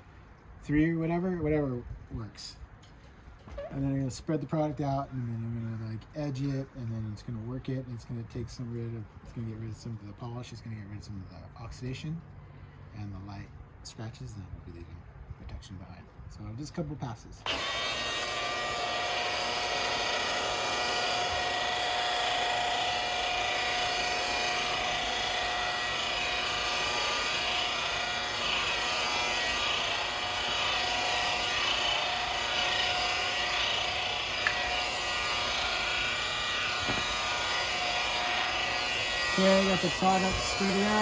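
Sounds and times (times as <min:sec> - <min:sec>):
rotary polisher running: 0:17.5 - 0:41.0.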